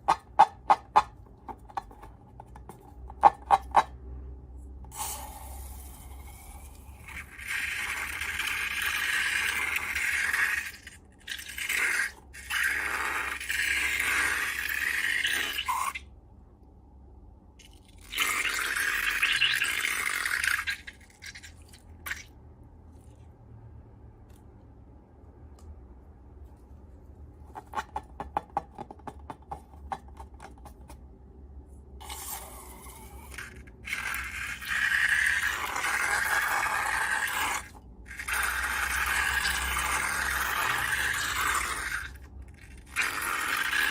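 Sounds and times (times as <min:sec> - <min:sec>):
scraping and stirring slime: 0:00.0 - 0:03.9, 0:26.3 - 0:43.9.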